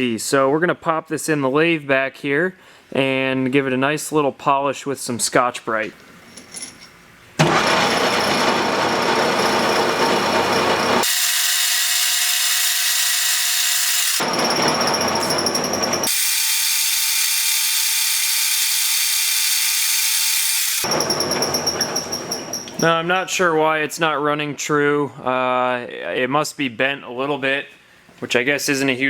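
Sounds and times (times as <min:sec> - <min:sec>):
lathe motor running: 0:07.4 - 0:22.8
steady whine: 0:07.5 - 0:17.1.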